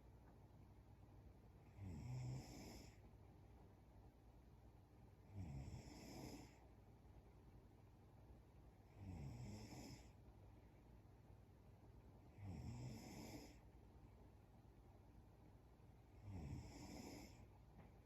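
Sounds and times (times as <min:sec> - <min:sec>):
woman snoring faintly: 0:05.3 - 0:06.6, 0:12.4 - 0:13.6, 0:16.2 - 0:17.5.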